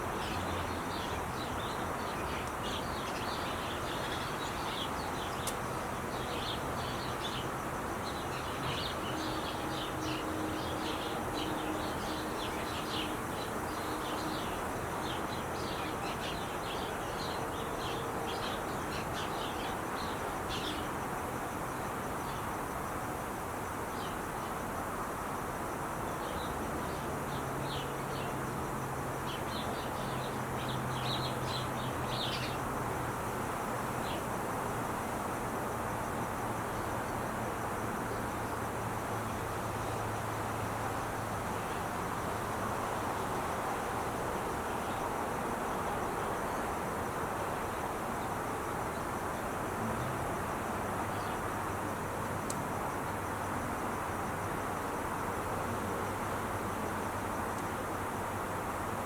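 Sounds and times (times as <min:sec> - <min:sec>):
small birds chirping: 0:29.3 - 0:32.6.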